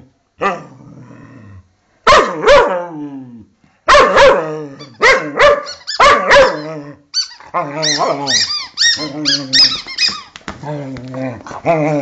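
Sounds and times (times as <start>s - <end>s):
dog growling: 0.4s - 1.7s, 10.6s - 12.0s
dog barking: 2.1s - 2.8s, 3.9s - 6.7s.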